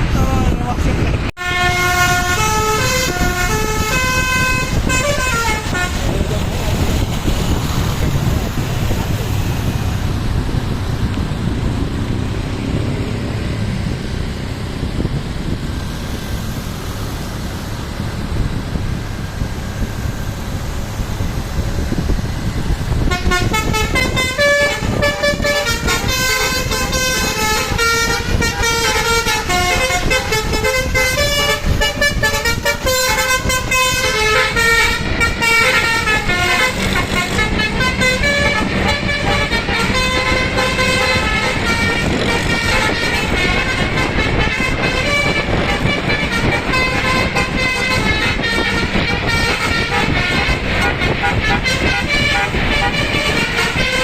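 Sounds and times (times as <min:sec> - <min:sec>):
bus engine: 0:00.0 - 0:54.0
road rumble: 0:00.0 - 0:54.0
musical air horn playing a tune: 0:01.4 - 0:06.2, 0:23.0 - 0:54.0.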